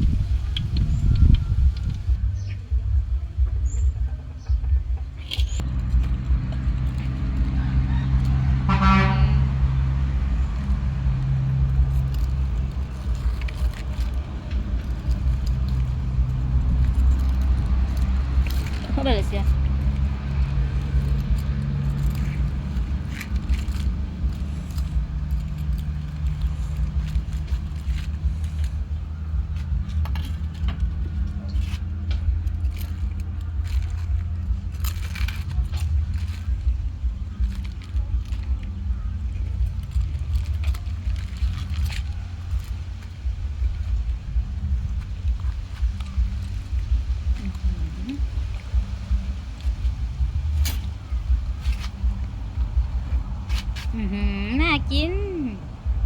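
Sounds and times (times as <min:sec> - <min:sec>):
low mechanical hum: 0:00.0 - 0:56.0
steady low rumble: 0:00.0 - 0:56.0
utensils clinking: 0:10.2 - 0:52.8.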